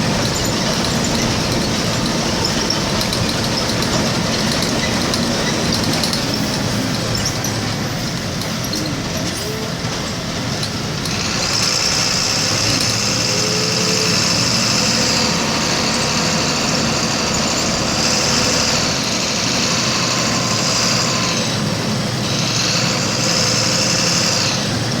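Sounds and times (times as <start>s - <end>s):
bus engine running: 0.0s - 25.0s.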